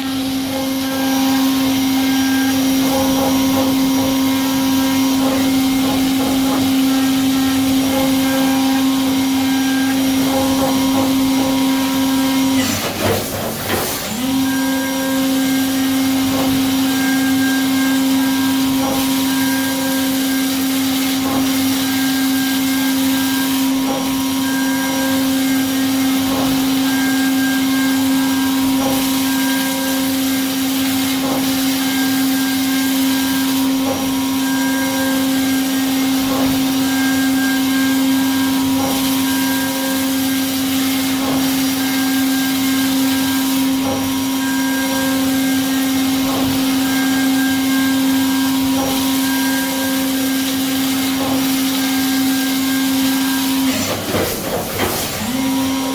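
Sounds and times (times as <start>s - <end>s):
milling machine cutting: 0.0s - 55.9s
milling machine spindle whine: 0.0s - 55.9s.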